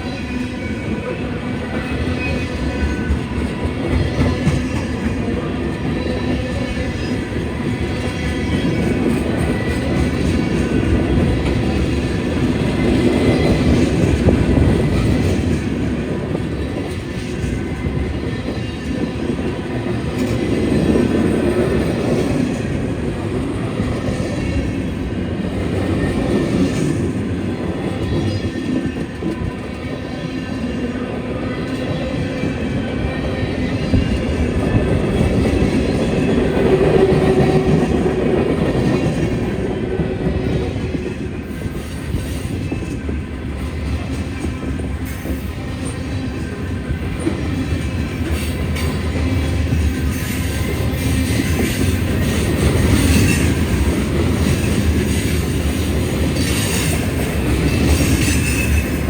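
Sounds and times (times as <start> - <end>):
train wheels rumbling on track: 0.0 - 59.0.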